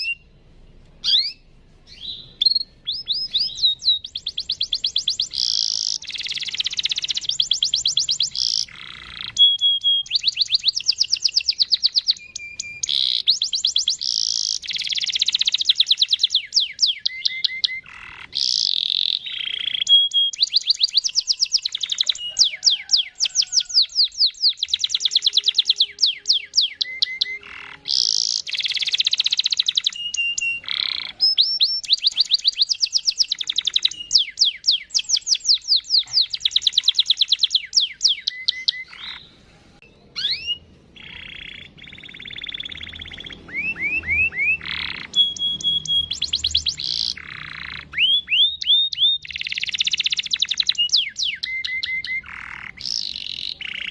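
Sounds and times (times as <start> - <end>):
canary singing trills: 0.0 - 53.9.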